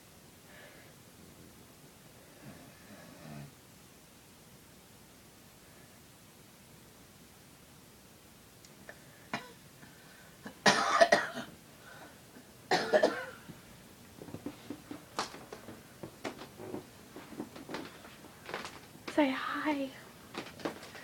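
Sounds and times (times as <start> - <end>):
breathing: 0.5 - 1.0, 8.9 - 10.4, 11.8 - 12.2
woman snoring: 2.3 - 3.6.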